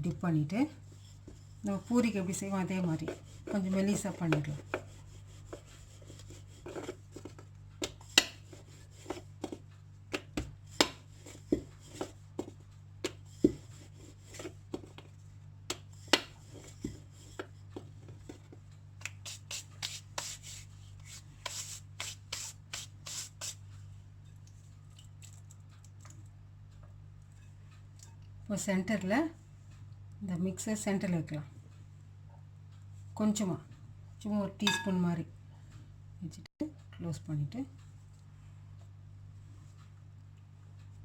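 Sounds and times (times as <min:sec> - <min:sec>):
hands rubbing dough: 0:00.5 - 0:23.9.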